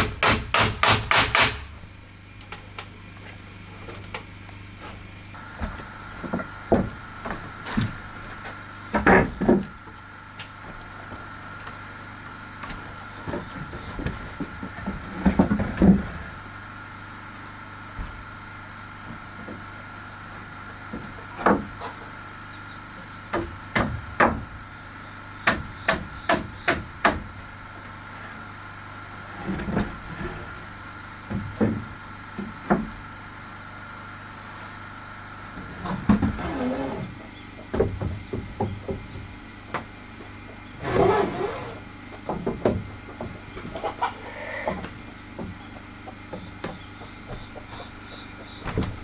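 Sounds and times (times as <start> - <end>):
steady background hum: 0.0 - 49.0
wooden boards knocking together: 5.6 - 10.0, 12.7 - 16.4, 20.9 - 22.0, 37.1 - 40.7, 42.1 - 49.0.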